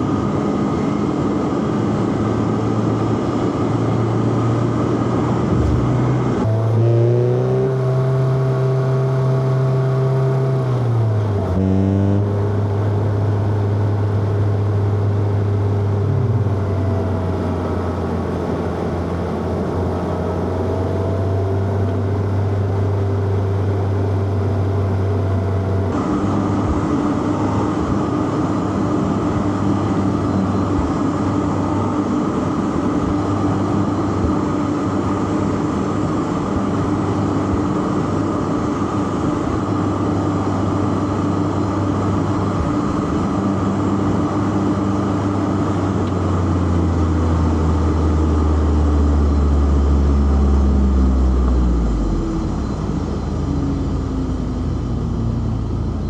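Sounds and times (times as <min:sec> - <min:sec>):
road and tyre noise: 0:00.0 - 0:56.0
deep drone: 0:04.5 - 0:11.4, 0:12.3 - 0:32.0, 0:42.6 - 0:56.0
car engine pulling: 0:05.2 - 0:08.2.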